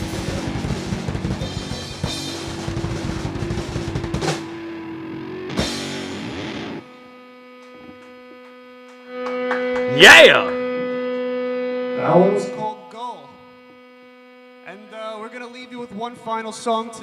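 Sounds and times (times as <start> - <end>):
cymbal crashes: 0.0 - 4.8
live rock band playing: 0.0 - 6.8.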